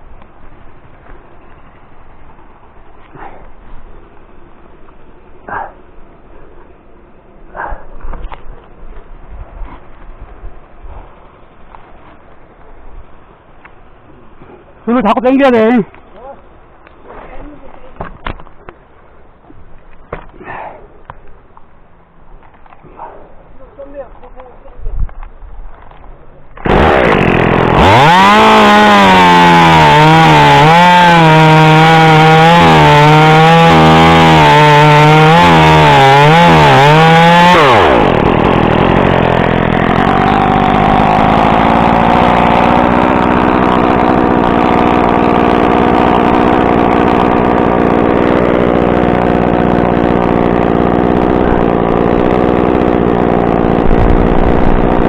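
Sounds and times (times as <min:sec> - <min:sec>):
chainsaw cutting wood: 0:26.6 - 0:55.0.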